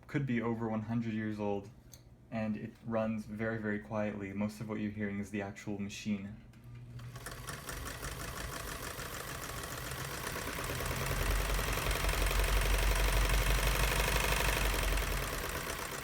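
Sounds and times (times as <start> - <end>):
quiet motor hum: 0.0 - 16.0
sewing machine clatter: 7.0 - 16.0.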